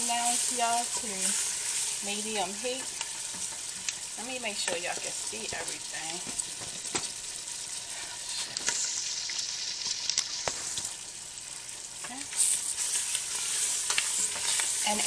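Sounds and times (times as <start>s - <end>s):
vegetables sizzling in oil: 0.0s - 15.0s
utensil scraping a pot: 12.3s - 15.0s.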